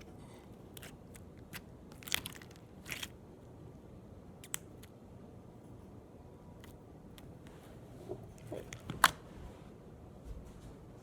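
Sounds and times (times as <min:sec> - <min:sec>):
slime being squished: 0:00.7 - 0:03.2.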